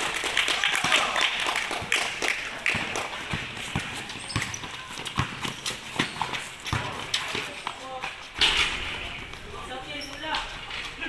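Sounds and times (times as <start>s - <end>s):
basketball bouncing on hardwood: 2.7s - 7.5s.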